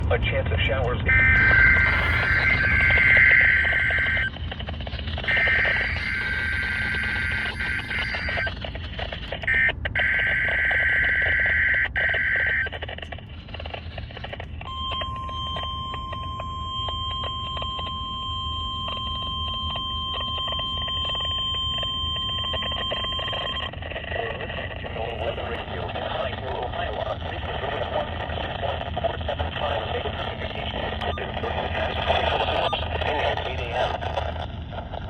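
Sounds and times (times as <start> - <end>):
radio static crackle: 0.0 - 35.0
warbling digital header tones: 0.3 - 8.6, 14.0 - 28.6, 29.6 - 34.0
steady alarm tone: 0.9 - 8.6, 14.6 - 23.7.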